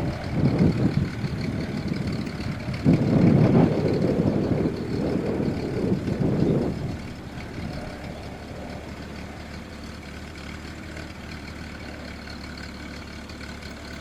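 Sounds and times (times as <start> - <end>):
wind buffeting microphone: 0.0 - 9.7
plane piston engine running: 0.0 - 14.0.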